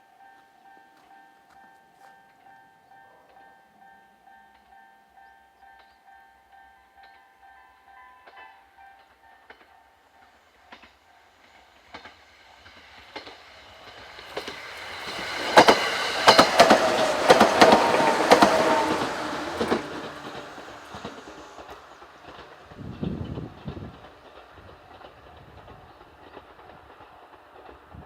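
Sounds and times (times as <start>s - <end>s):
train passing: 9.5s - 28.0s
wheels clicking over rail joints: 10.7s - 28.0s.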